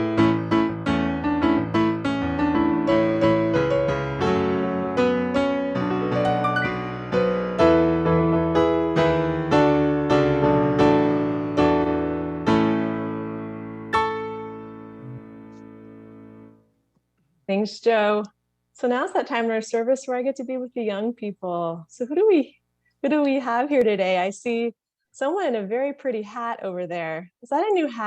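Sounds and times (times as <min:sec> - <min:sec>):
slow solo piano piece: 0:00.0 - 0:16.5.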